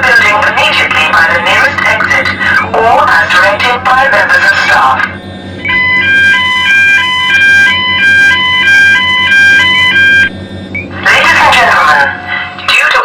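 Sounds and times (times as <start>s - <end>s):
fire alarm two-tone alert: 5.6s - 10.9s.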